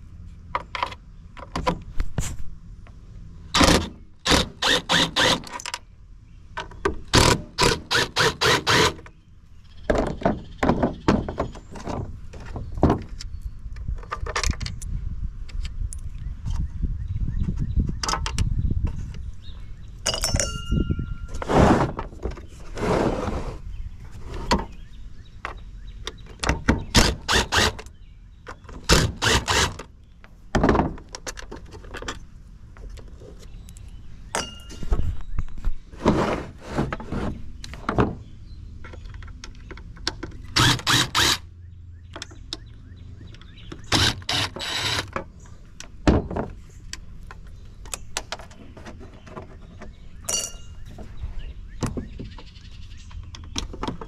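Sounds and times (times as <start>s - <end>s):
ringing metallic tone: 50.3s - 50.8s.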